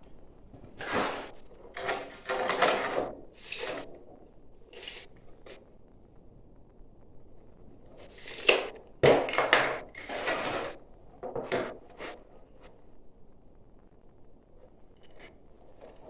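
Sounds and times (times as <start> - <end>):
rough scraping of building materials: 0.7 - 5.6, 8.0 - 12.2.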